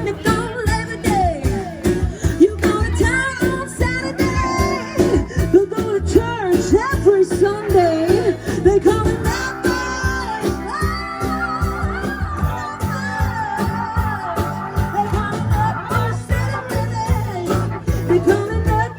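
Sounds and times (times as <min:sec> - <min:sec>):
rock song with singing: 0:00.0 - 0:18.9.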